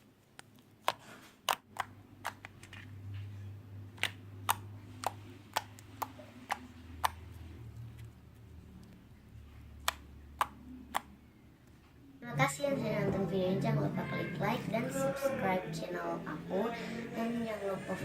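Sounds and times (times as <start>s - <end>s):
slime clicking and tapping: 0.3s - 2.7s, 4.0s - 7.4s, 9.8s - 11.1s
low steady hum: 1.7s - 18.0s.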